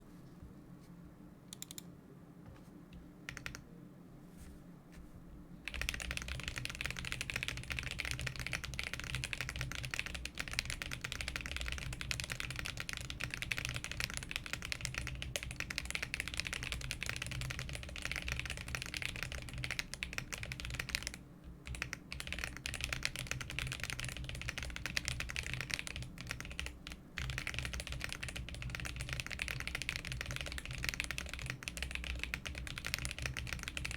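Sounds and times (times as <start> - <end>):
typing on mechanical keyboard: 3.3 - 3.6, 5.7 - 33.9.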